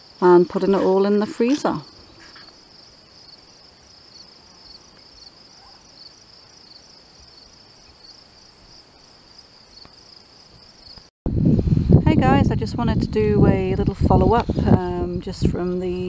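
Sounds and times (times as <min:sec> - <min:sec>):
crickets chirping: 0:00.0 - 0:11.1.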